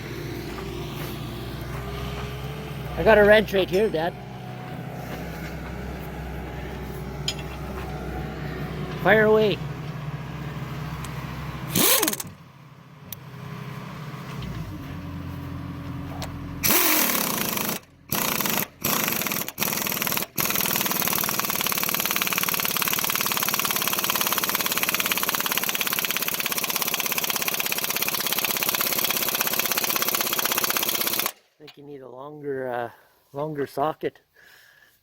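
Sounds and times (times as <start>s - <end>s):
pneumatic impact wrench hammering: 11.7s - 12.4s, 16.6s - 31.4s.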